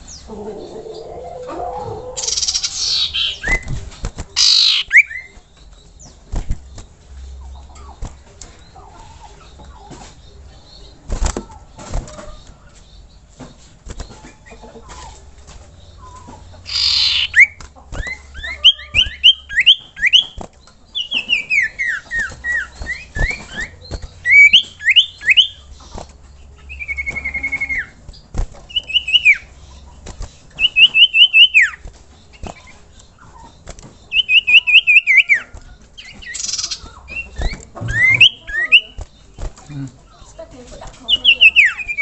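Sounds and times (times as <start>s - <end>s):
bird trill: 0.0s - 13.2s, 14.0s - 42.0s
bird whistling: 2.2s - 3.8s, 4.4s - 5.4s, 16.0s - 20.4s, 21.0s - 25.7s, 26.6s - 28.0s, 28.7s - 29.6s, 30.6s - 39.0s, 41.1s - 42.0s.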